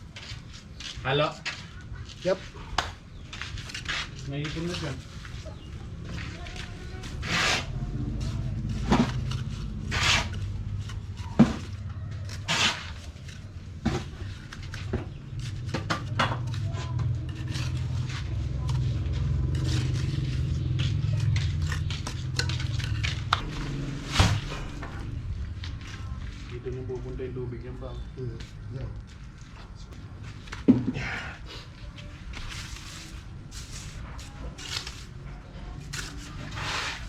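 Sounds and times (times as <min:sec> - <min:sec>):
metal tools scraping wet concrete: 0:03.6 - 0:11.4, 0:12.2 - 0:13.6, 0:16.4 - 0:24.8, 0:32.5 - 0:37.0.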